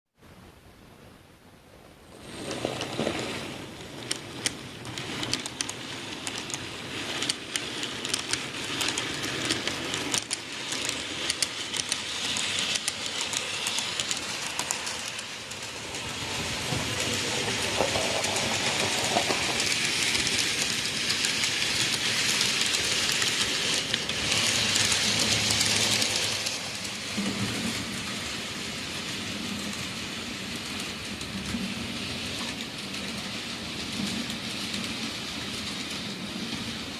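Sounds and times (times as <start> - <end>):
model train wheels hissing on rails: 2.1 - 36.9
wheels clicking over track joints: 2.3 - 28.1.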